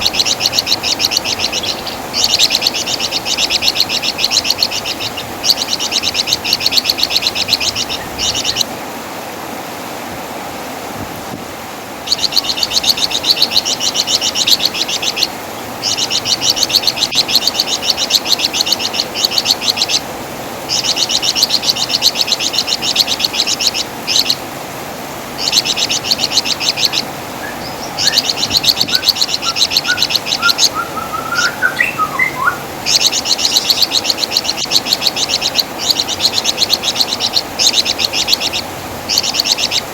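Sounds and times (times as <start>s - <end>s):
songbird chattering call: 0.0s - 8.7s, 12.1s - 20.1s, 20.7s - 24.4s, 25.4s - 39.9s
steady hiss: 0.0s - 39.9s
thin whistled notes: 28.9s - 32.6s.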